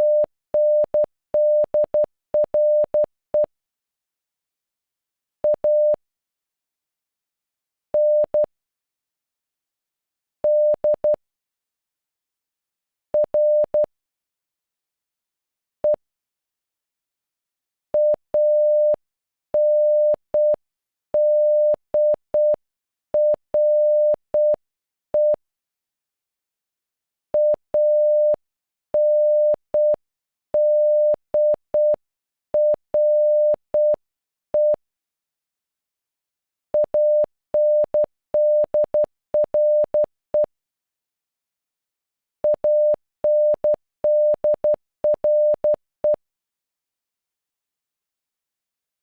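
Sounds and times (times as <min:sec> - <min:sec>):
morse code beeps: 0:00.0 - 0:03.5, 0:18.0 - 0:19.0, 0:19.6 - 0:20.6, 0:21.2 - 0:22.6, 0:23.2 - 0:24.6, 0:27.4 - 0:28.4, 0:29.0 - 0:30.0, 0:30.6 - 0:32.0, 0:32.6 - 0:34.0, 0:34.6 - 0:34.8, 0:36.8 - 0:40.5, 0:42.4 - 0:46.2.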